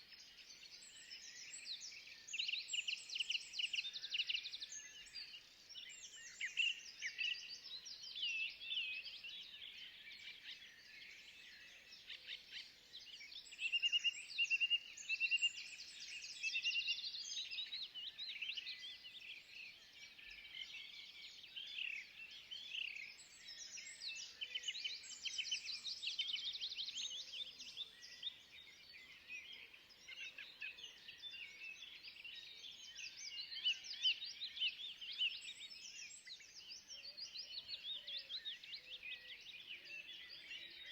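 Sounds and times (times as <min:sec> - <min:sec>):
small birds chirping and trilling: 0:00.0 - 0:40.9.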